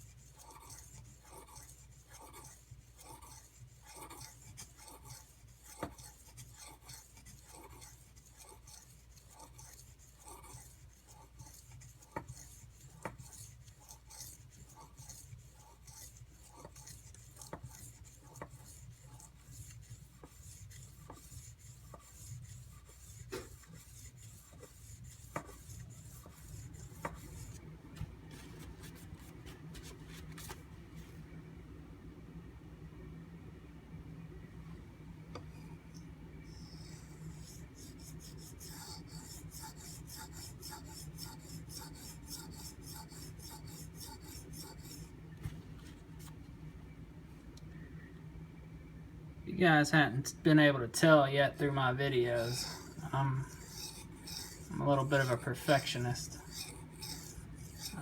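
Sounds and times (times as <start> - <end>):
knife rubbing on whetstone: 0.0 - 27.6, 36.5 - 45.1, 51.6 - 58.0.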